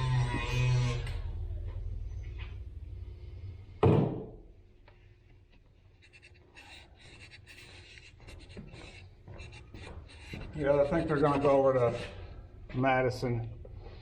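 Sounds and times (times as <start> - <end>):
sharp loud thunk: 3.8 - 4.4.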